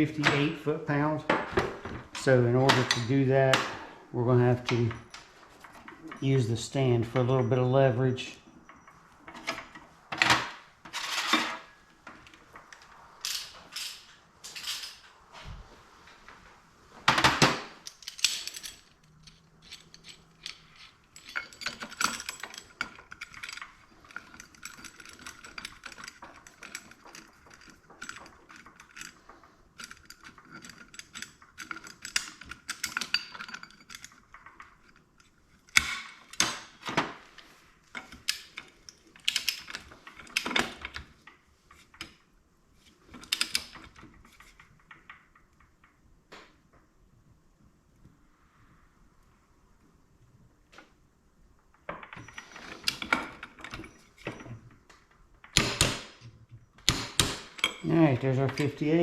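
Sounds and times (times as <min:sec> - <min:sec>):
metal tool clanks and knocks: 0:01.2 - 0:03.9, 0:55.5 - 0:59.0.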